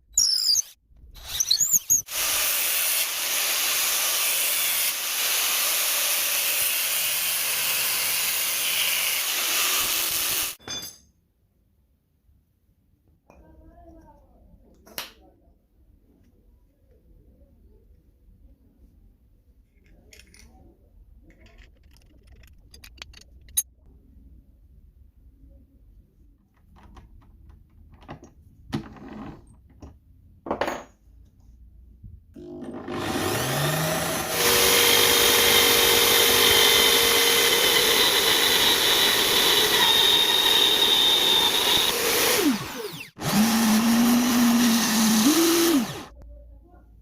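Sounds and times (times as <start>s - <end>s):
power drill sanding wood: 1.3s - 10.6s, 33.0s - 46.1s.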